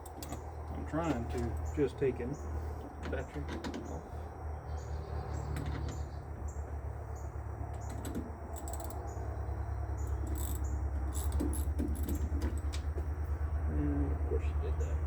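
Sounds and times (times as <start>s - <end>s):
continuous low rumble: 0.0s - 15.0s
sharp clicks and knocks: 2.8s - 4.0s, 10.1s - 13.1s.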